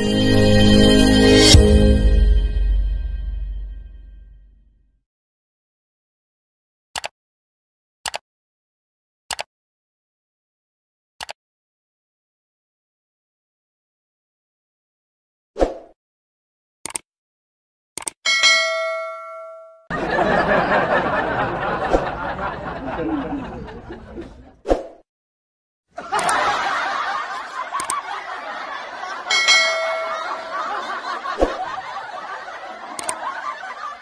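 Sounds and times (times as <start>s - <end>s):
bell ding: 18.3s - 19.9s, 29.3s - 31.0s
crowd laughing: 19.9s - 24.6s, 25.9s - 34.0s.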